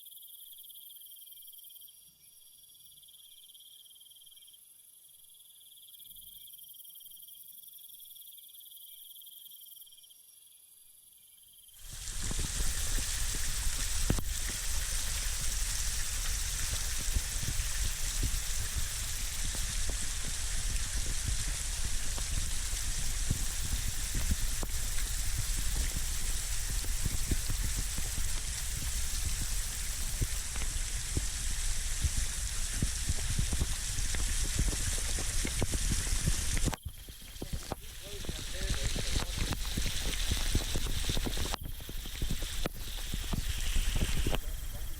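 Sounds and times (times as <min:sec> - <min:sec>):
crickets chirping: 0:00.0 - 0:44.9
waterfall rushing: 0:37.3 - 0:41.5.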